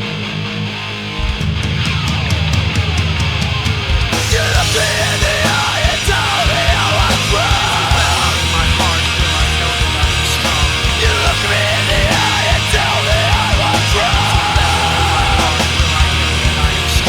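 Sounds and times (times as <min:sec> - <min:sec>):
punk rock band playing: 0:00.0 - 0:17.0
shouted vocals: 0:04.2 - 0:17.0.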